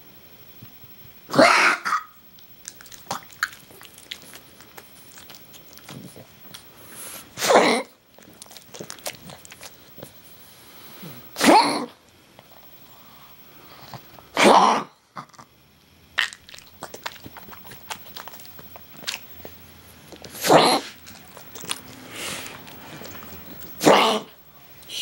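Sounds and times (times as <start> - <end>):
dog coughing harshly: 1.3 - 2.2, 7.4 - 8.0, 11.4 - 12.0, 14.3 - 15.4, 20.3 - 21.0, 23.8 - 24.4.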